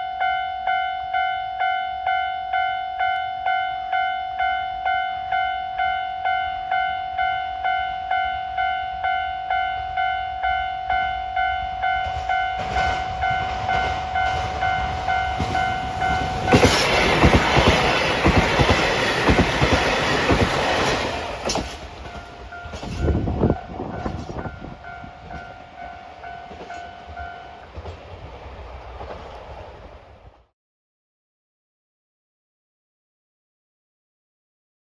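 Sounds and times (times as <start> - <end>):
diesel train engine rumble: 11.6 - 30.4
train wheel clatter: 12.0 - 24.6, 26.4 - 29.9.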